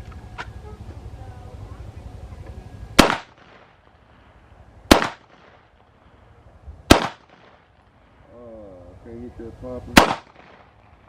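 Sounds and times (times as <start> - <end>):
pistol shots with echo: 3.0 - 4.0, 4.9 - 6.0, 6.9 - 7.9, 9.9 - 10.9.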